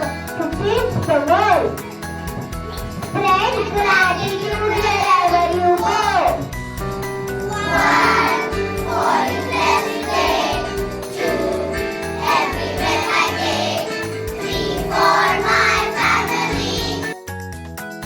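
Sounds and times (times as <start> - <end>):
pulsing bass accompaniment: 0.0 - 17.1
group of voices singing: 7.5 - 17.1.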